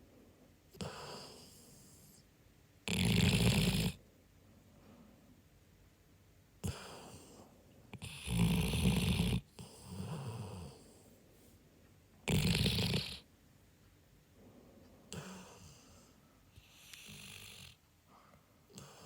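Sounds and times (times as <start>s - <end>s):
loud snores: 0.8s - 1.9s, 2.9s - 4.0s, 6.6s - 7.3s, 8.0s - 10.9s, 12.3s - 13.2s, 15.1s - 16.0s, 16.6s - 17.8s
soft breaths: 3.9s - 5.6s, 6.6s - 8.2s, 9.4s - 12.0s, 14.3s - 19.0s.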